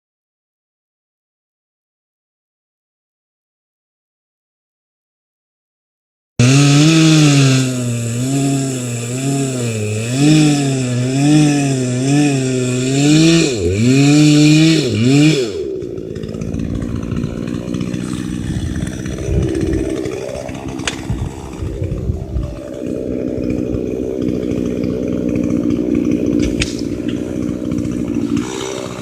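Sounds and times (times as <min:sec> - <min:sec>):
chainsaw engine running: 0:06.4 - 0:29.0.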